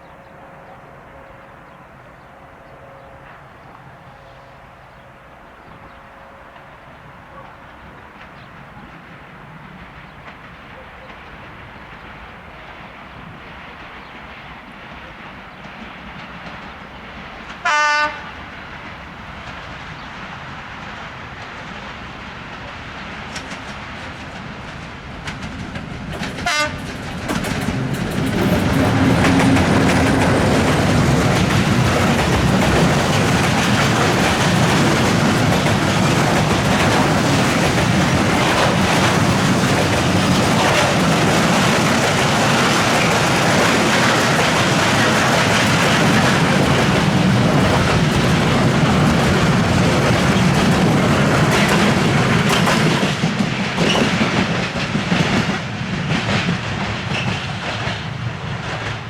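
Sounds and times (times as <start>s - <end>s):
train passing rumble: 0.0s - 59.0s
train horn blast: 17.6s - 18.5s, 26.4s - 26.9s
wheels clicking over track: 23.3s - 59.0s.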